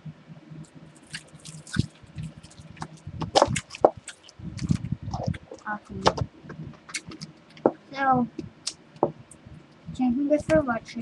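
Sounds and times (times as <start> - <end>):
wet chewing and lip-smacking: 0.6 - 5.7.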